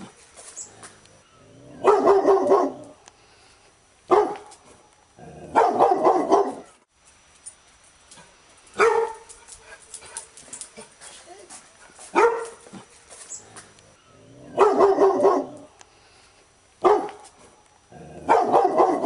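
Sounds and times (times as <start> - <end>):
dog barking: 1.8 - 3.0, 4.1 - 4.5, 5.5 - 6.8, 8.8 - 9.3, 12.1 - 12.6, 14.5 - 15.7, 16.8 - 17.2, 18.2 - 19.0.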